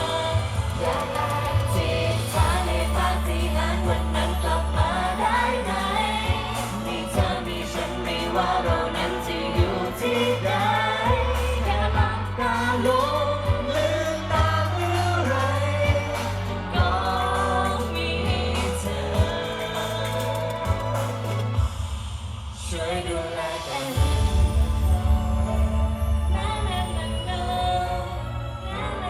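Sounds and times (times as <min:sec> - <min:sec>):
person singing: 0:00.0 - 0:22.0
band with heavy bass: 0:00.0 - 0:29.0.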